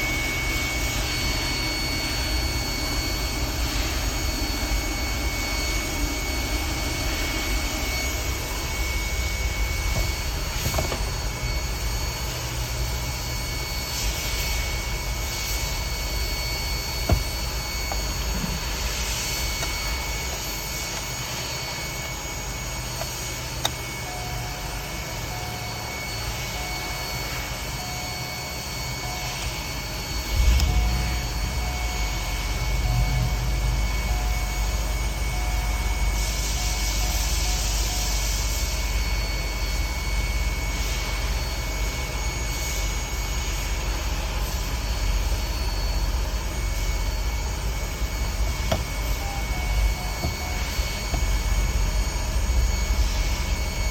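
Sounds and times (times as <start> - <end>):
engine running: 0.0 - 26.8, 43.4 - 53.9
high constant whine: 0.0 - 53.9.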